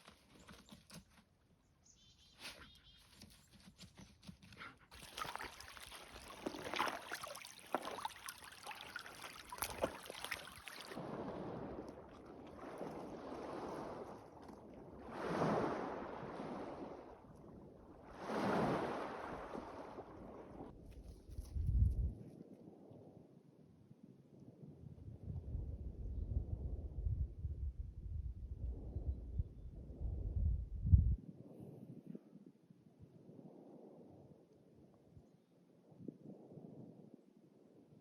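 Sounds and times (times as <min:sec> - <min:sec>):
ocean waves washing in: 0:08.6 - 0:17.3, 0:17.9 - 0:20.7.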